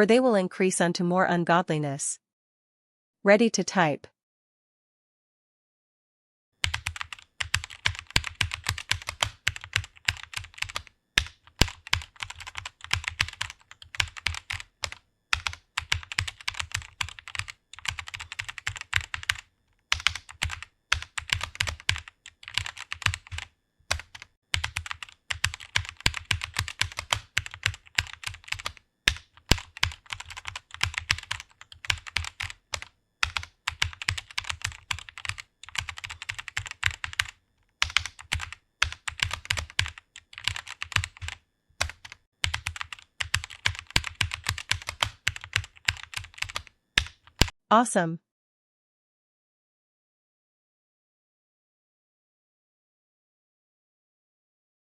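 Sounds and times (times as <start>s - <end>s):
fast typing on keyboard: 6.6s - 47.6s.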